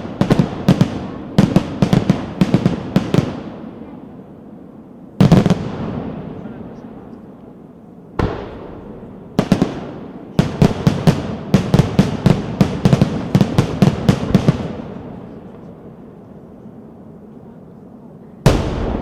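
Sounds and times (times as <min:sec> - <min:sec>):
firework bangs: 0:00.0 - 0:04.0, 0:05.2 - 0:07.0, 0:08.1 - 0:15.8, 0:18.4 - 0:19.0
rumbling echo: 0:18.5 - 0:19.0.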